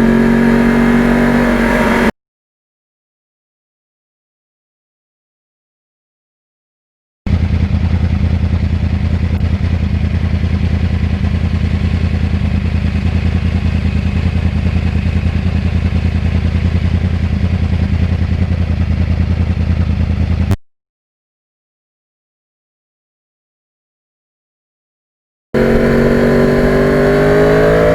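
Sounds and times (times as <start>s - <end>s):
motorcycle engine idling: 7.3s - 20.6s.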